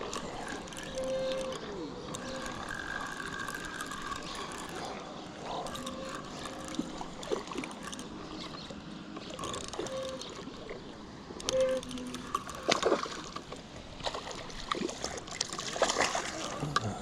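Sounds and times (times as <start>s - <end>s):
fishing reel clicking: 0.0s - 10.8s, 11.4s - 13.6s.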